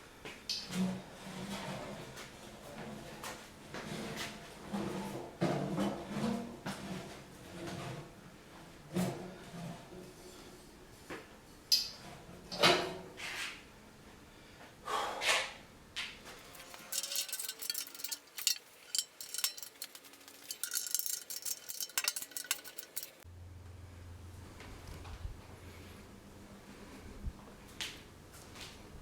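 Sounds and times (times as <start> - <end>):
light clinking and clattering: 16.4 - 23.3.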